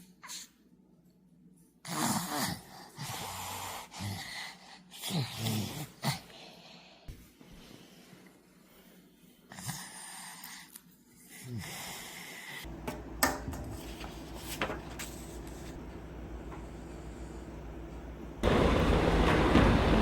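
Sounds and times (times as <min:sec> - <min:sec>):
child snoring: 0:01.8 - 0:06.3
steady low hum: 0:12.6 - 0:20.0.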